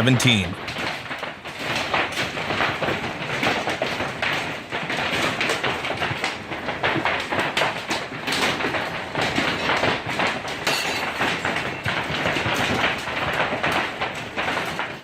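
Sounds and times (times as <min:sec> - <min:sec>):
hail clattering on hard surfaces: 0:00.6 - 0:15.0.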